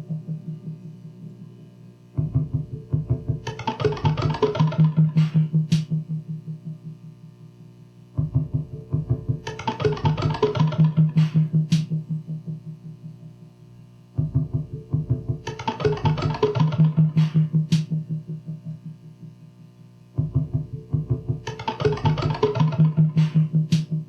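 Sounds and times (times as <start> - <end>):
pulsing low electronic tones: 0.0 - 7.3, 8.2 - 13.3, 20.2 - 24.0.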